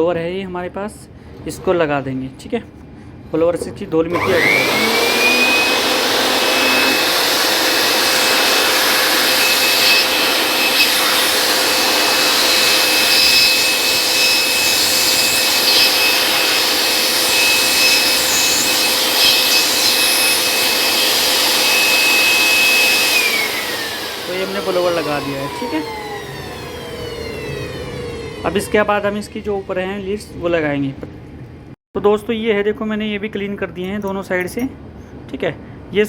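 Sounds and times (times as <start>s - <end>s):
electric air blower whine: 4.1s - 30.9s.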